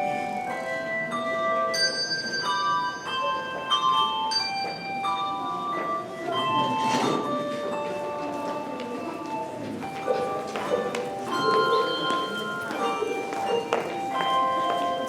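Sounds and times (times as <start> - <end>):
handbell choir playing: 0.0 - 15.0.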